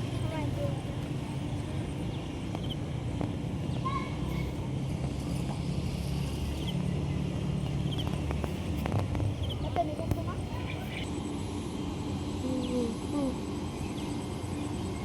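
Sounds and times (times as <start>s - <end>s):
bird chirps: 2.1s - 2.9s, 6.5s - 8.2s, 9.4s - 9.8s.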